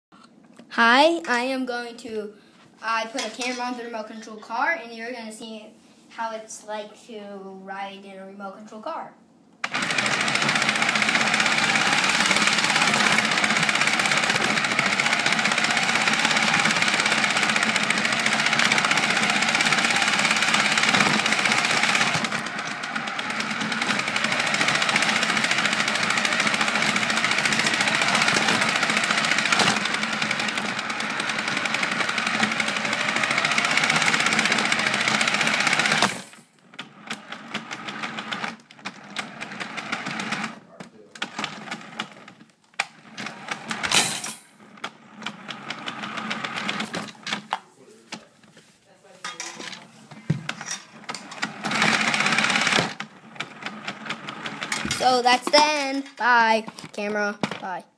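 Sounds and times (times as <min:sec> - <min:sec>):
toy car motor running: 0:09.6 - 0:36.4, 0:51.4 - 0:55.9.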